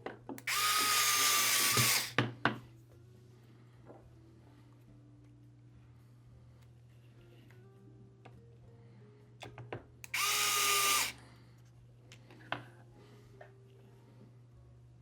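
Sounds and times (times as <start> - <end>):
electric screwdriver whining: 0.4 - 2.2, 10.1 - 11.2.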